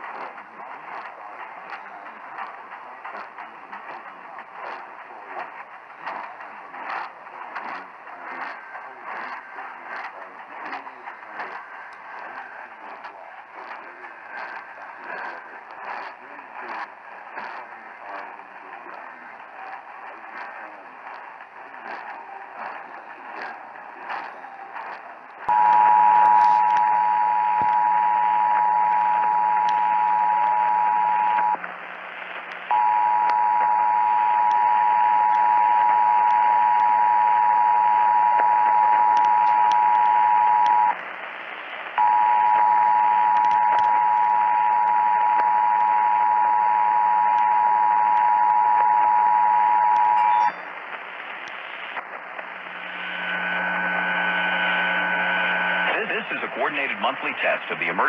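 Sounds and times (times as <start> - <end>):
broadcast radio hiss: 0.0 - 58.0
two-tone attention signal: 42.0 - 50.6
low hum: 49.4 - 56.2.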